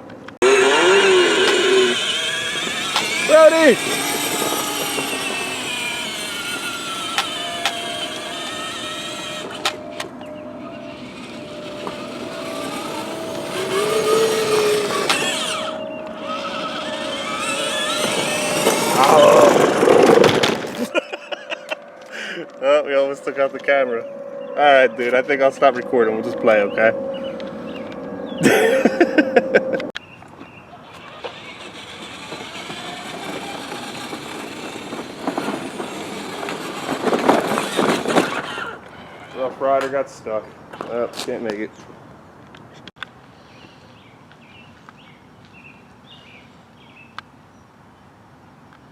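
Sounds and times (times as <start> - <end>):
plastic wheels rolling: 0.4 - 22.7, 30.0 - 40.1
electric motor whining: 0.4 - 30.0, 30.7 - 39.8.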